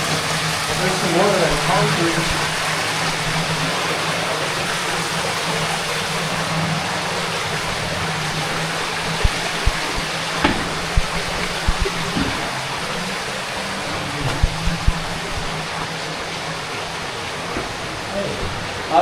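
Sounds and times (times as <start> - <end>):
flowing water rushing: 0.0 - 19.0
dull low bumps: 7.6 - 13.1, 13.8 - 15.9.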